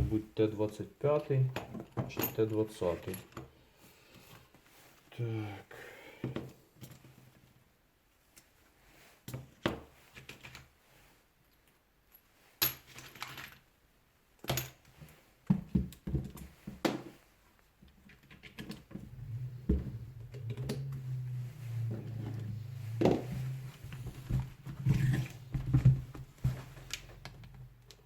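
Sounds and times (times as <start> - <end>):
small metal tools clattering: 1.5 - 3.5, 12.6 - 13.7
steady low hum: 19.0 - 27.0.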